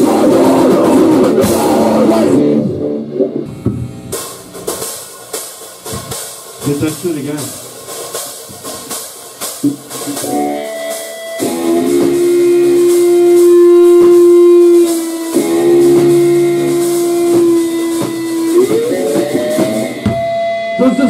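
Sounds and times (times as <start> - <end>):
rock band music: 0.0 - 21.0
long loud held note: 10.2 - 21.0.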